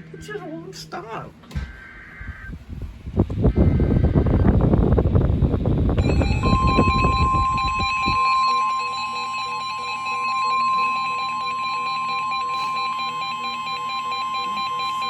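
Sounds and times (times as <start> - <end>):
high warning tone: 6.0 - 15.0
rapid beeping: 6.0 - 15.0.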